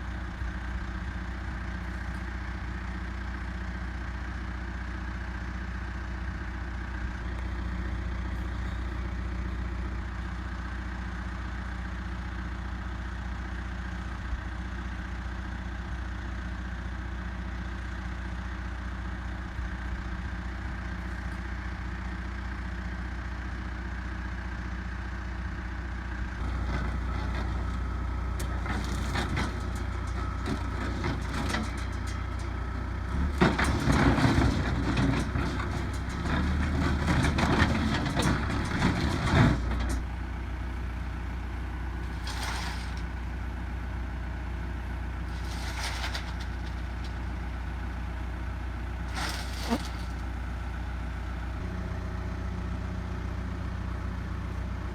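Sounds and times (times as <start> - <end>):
backhoe diesel engine running: 0.0 - 54.9.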